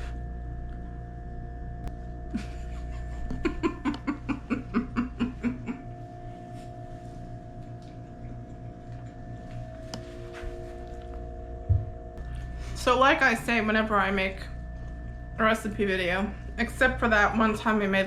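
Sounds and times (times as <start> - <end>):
woman laughing: 2.3 - 6.2.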